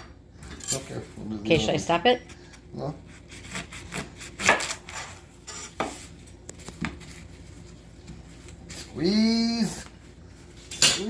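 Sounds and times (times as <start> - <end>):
knife chopping corn: 3.1 - 5.0.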